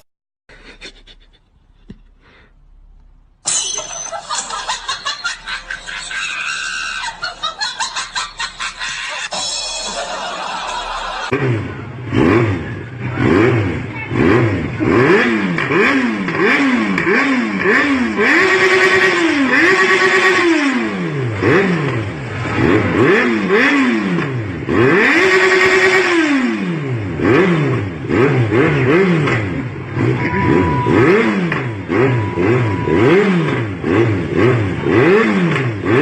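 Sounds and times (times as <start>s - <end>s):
engine revving: 10.2s - 36.0s.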